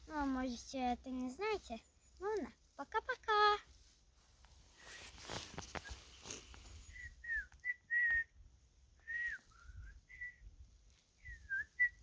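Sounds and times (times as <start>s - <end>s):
whistled notes: 5.8s - 8.4s, 9.0s - 10.5s, 11.2s - 12.0s.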